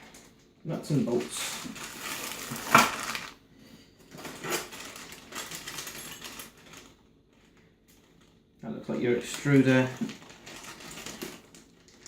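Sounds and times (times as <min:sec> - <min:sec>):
nuts and bolts clinking in bag: 0:01.1 - 0:03.3, 0:04.1 - 0:06.9, 0:09.4 - 0:12.0.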